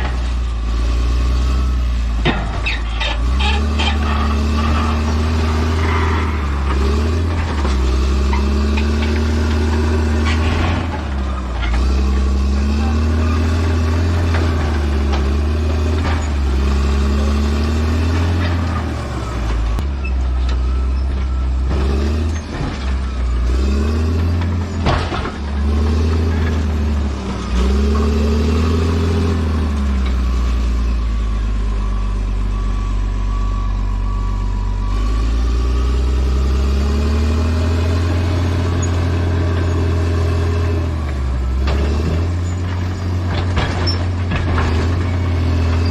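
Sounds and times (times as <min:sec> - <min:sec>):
bulldozer diesel engine: 0:00.0 - 0:45.9
beeping tone: 0:30.8 - 0:36.2.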